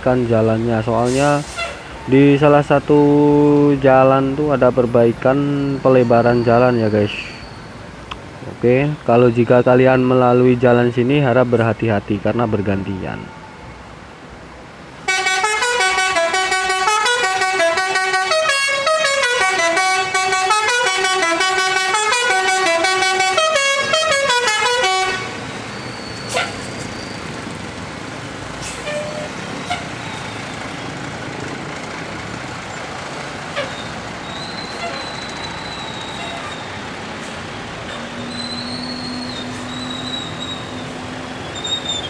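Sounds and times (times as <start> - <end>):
traffic noise: 0.0 - 42.0
musical bus horn melody: 15.1 - 25.6, 26.3 - 26.7, 28.8 - 30.0, 33.5 - 36.8.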